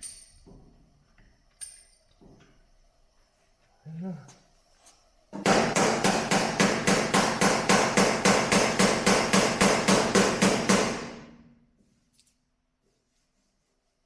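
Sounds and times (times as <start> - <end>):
hammer striking steel panel: 5.4 - 11.4.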